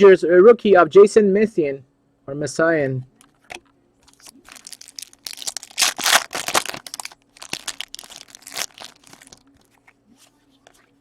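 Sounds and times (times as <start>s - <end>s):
plastic wrapper crinkling and tearing: 4.1s - 9.8s.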